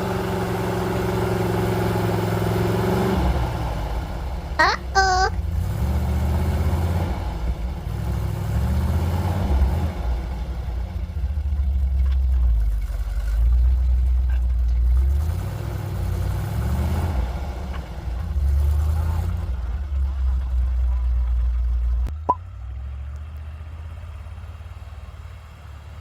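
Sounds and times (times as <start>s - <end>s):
engine revving: 15.0s - 19.8s.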